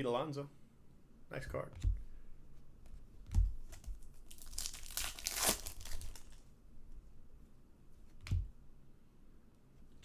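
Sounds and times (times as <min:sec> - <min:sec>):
foil wrapper tearing and crinkling: 0:04.2 - 0:06.4.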